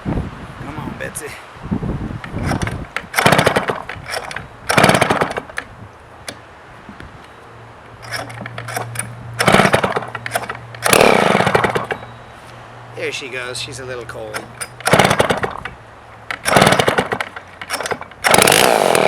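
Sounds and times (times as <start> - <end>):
chainsaw pull-start sputtering: 2.2 - 5.7, 8.0 - 12.1, 14.2 - 19.0.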